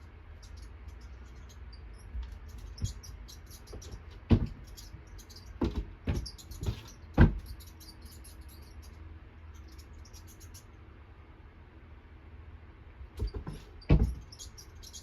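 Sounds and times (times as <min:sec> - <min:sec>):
high-pitched mouse squeaks: 0:00.3 - 0:10.8, 0:13.2 - 0:15.0
sudden thumps: 0:03.8 - 0:04.8, 0:05.6 - 0:07.5, 0:13.2 - 0:14.4.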